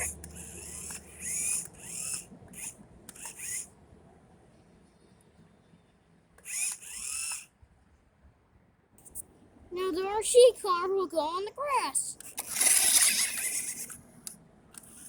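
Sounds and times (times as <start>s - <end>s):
small electric motor whining: 0.0s - 3.7s, 6.4s - 7.5s, 12.2s - 15.0s.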